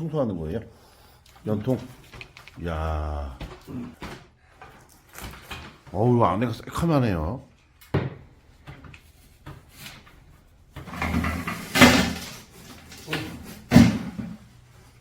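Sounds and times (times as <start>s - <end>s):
metal pipe clattering and scraping: 10.8s - 14.5s.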